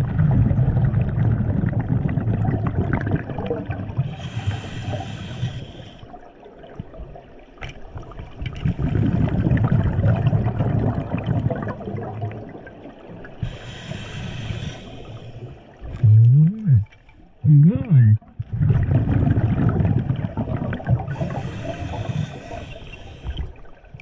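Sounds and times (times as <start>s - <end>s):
exhaled bubbles gurgling: 0.0s - 24.0s
regulator inhale hiss: 4.1s - 6.1s, 13.4s - 15.6s, 21.1s - 23.5s.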